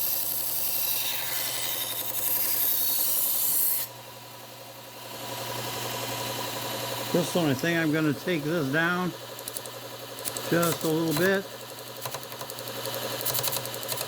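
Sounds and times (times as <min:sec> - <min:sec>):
knife grinding on belt sander: 0:00.0 - 0:04.0, 0:05.1 - 0:14.0
sander motor hum: 0:03.9 - 0:14.0.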